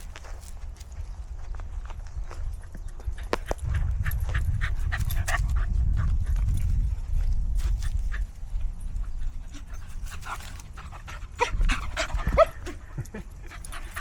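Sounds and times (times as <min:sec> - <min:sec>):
dogs panting: 0:02.8 - 0:14.0.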